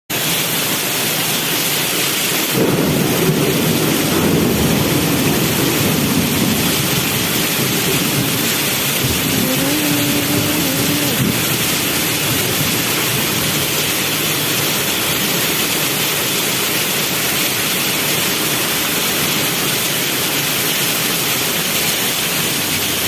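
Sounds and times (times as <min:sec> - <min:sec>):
heavy rain pouring: 0:00.1 - 0:23.0
thunder rumbling: 0:02.5 - 0:16.0.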